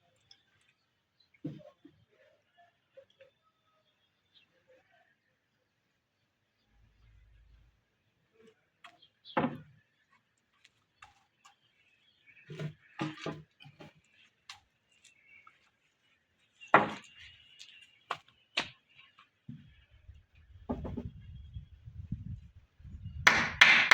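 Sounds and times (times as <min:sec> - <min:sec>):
knocks on wooden timber: 0:20.7 - 0:21.1, 0:23.3 - 0:23.9.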